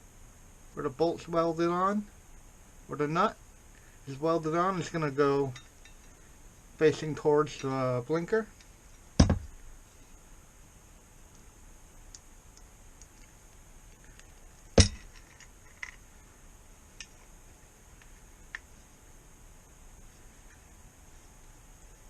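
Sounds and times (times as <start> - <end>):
metal parts knocking and clinking: 14.8 - 16.0.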